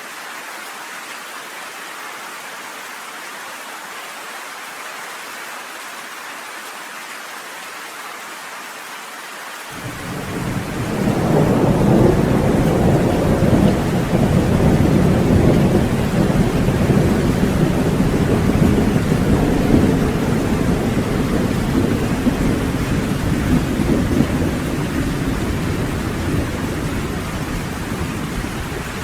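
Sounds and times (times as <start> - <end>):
rain hissing: 9.6 - 29.0
thunder rumbling: 9.8 - 29.0.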